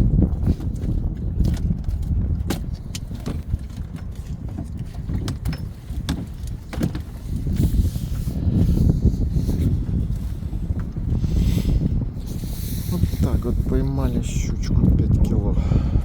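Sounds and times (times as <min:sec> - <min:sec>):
wind buffeting microphone: 0:00.0 - 0:16.0
sharp knocks and clicks: 0:00.6 - 0:07.2.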